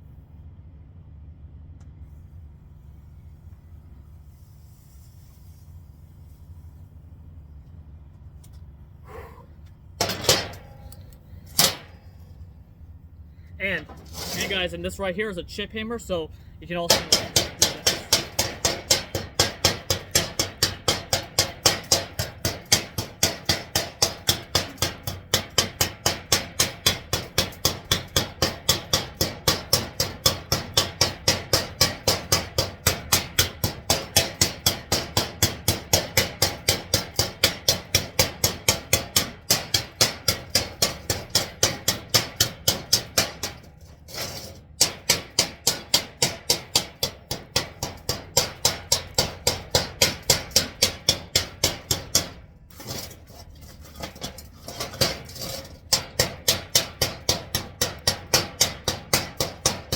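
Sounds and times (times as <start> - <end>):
chipping hammer striking steel: 10.0 - 11.0, 11.6 - 12.0, 16.7 - 53.2, 54.0 - 59.9.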